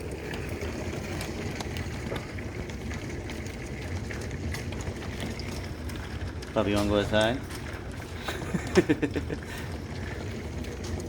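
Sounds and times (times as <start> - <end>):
hailstones ticking on surfaces: 0.0 - 11.0
rain and hail pouring: 0.0 - 11.0.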